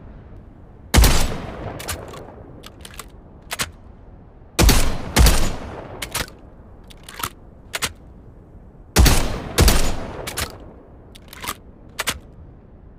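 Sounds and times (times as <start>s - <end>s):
loud shotgun shots: 1.0s - 3.7s, 4.6s - 6.4s, 9.0s - 10.6s
shotgun action clicks: 1.0s - 3.8s, 4.7s - 8.1s, 9.0s - 10.6s, 11.2s - 12.3s.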